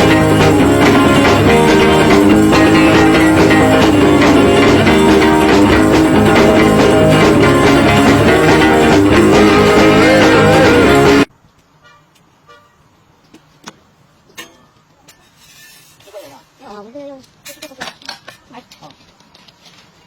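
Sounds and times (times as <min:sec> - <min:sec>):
loud guitar music with beat: 0:00.0 - 0:11.3.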